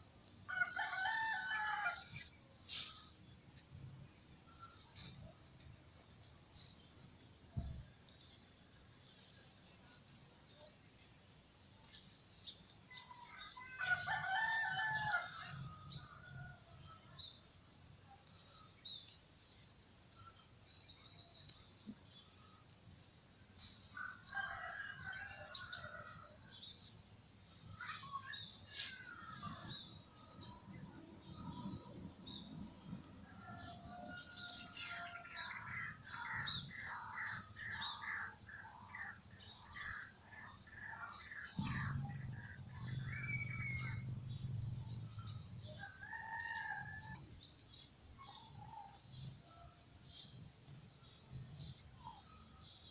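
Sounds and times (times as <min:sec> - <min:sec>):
rooster crowing: 0:00.5 - 0:02.1, 0:13.7 - 0:16.4, 0:45.7 - 0:47.3.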